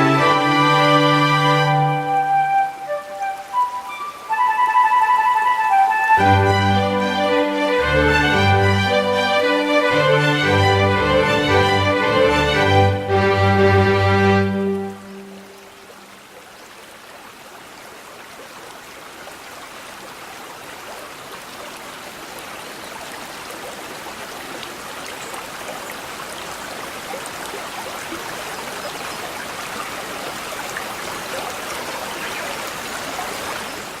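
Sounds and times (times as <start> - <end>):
orchestral chord: 0.0 - 2.6, 6.1 - 15.7
stream babbling: 0.0 - 34.0.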